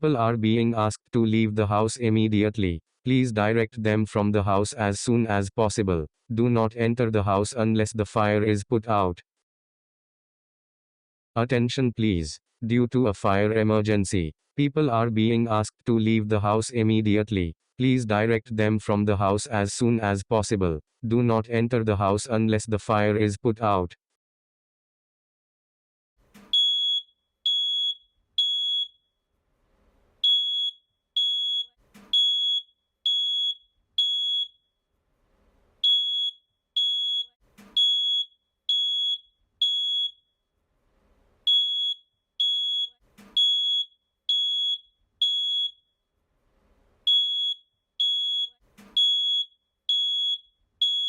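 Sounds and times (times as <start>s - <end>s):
smoke alarm beeping: 26.4s - 29.0s, 30.2s - 34.7s, 35.8s - 40.3s, 41.4s - 45.9s, 47.0s - 51.0s.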